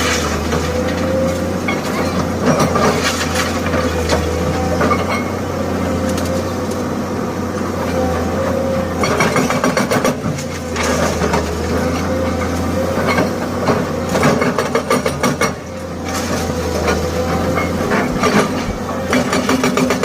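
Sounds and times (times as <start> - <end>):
diesel engine running: 0.0 - 20.0
hydraulic breaker hammering concrete: 9.0 - 11.4, 14.1 - 20.0.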